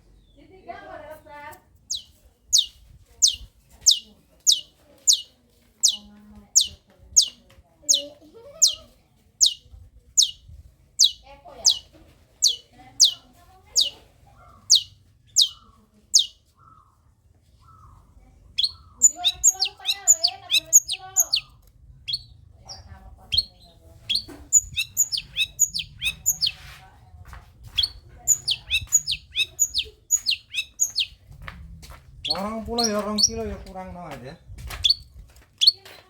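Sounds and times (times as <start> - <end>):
bird singing sharp high notes: 18.6 - 21.5, 24.1 - 26.6.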